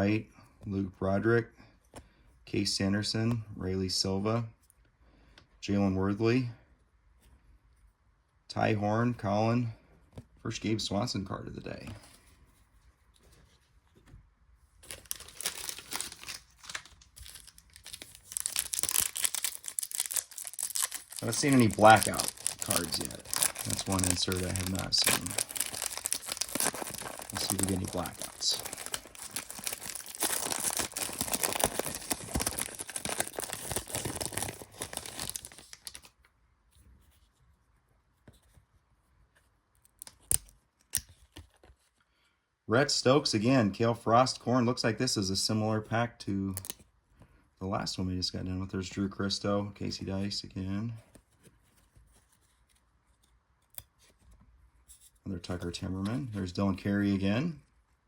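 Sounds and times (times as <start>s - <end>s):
foil wrapper crinkling: 14.8s - 36.1s.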